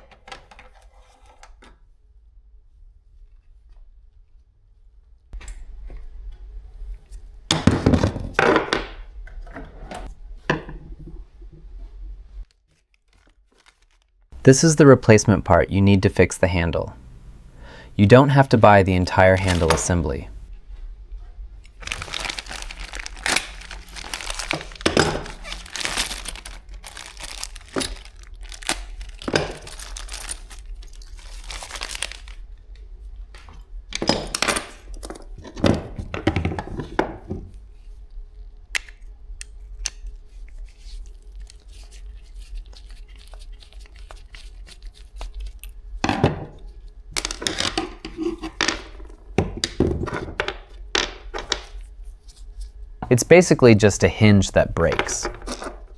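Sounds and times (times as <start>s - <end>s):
plastic packaging crinkling: 12.9s - 14.2s, 18.4s - 37.4s, 38.8s - 53.2s.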